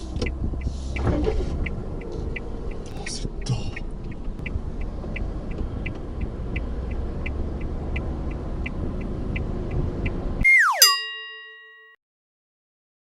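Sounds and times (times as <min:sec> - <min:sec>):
engine and road rumble: 0:00.0 - 0:10.4
ringing chime sweeping down: 0:10.4 - 0:12.0.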